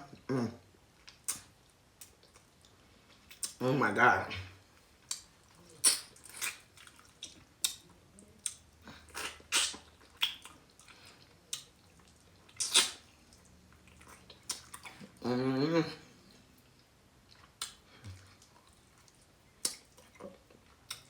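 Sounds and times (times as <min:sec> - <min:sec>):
person chewing with wet smacks: 0:00.9 - 0:03.6, 0:04.8 - 0:15.3, 0:16.2 - 0:21.0.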